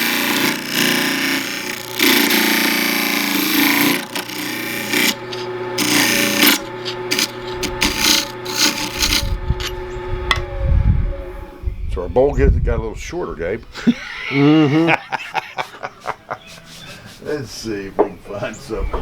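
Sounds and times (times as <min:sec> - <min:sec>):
gouge scraping wood: 0:00.0 - 0:09.4
lathe motor hum: 0:00.0 - 0:11.6.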